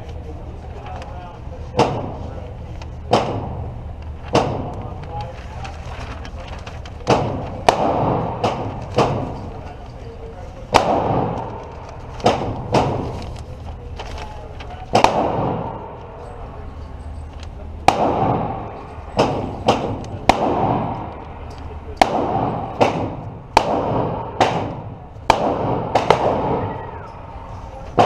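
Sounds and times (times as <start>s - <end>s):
gunshots with echo: 3.1s - 4.9s, 7.1s - 9.6s, 10.7s - 13.2s, 14.9s - 16.2s, 17.8s - 28.0s.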